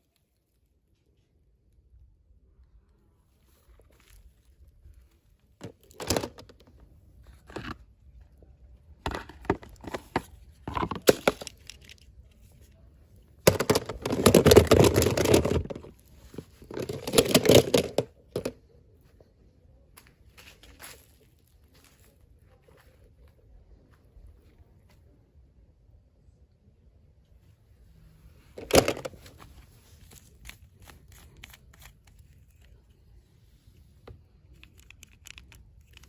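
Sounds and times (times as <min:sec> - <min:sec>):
packaging being torn and crinkled: 0:28.6 - 0:32.8.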